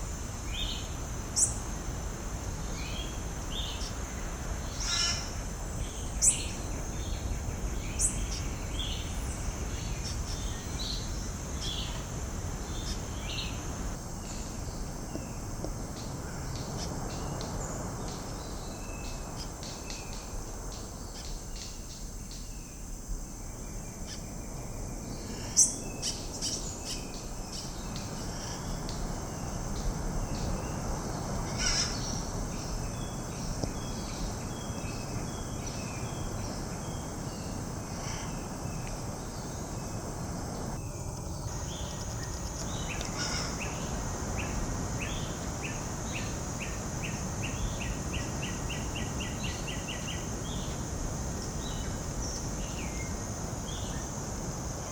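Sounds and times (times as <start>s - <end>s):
high-pitched insect drone: 31.5s - 54.9s.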